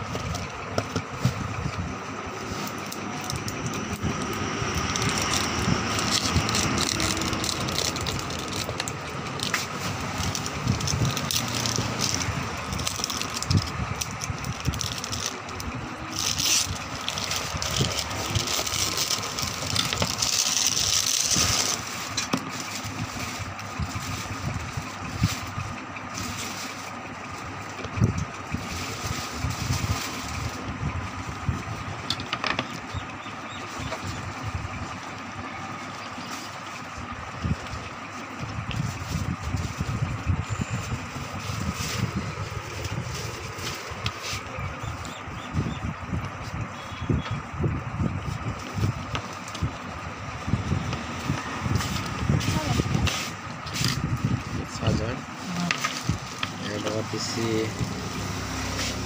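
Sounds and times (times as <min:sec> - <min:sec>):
background hum: 0:00.0 - 0:59.0
cardboard and plastic rustling: 0:00.0 - 0:59.0
packaging crinkling: 0:02.3 - 0:27.4, 0:40.8 - 0:45.2.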